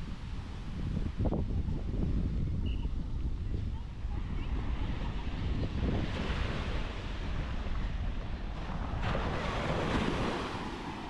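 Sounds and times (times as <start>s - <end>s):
wind buffeting microphone: 0.0s - 11.0s
surf washing onto beach: 4.1s - 11.0s.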